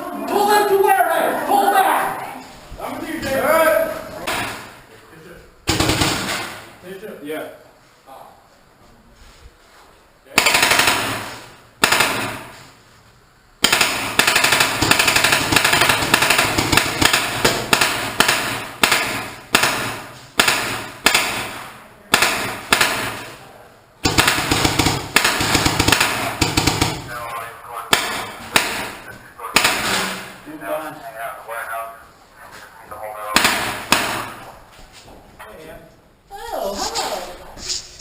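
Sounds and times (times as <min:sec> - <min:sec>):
paintball markers rapid fire: 0:05.7 - 0:06.4, 0:10.4 - 0:12.5, 0:13.6 - 0:23.3, 0:24.0 - 0:27.1.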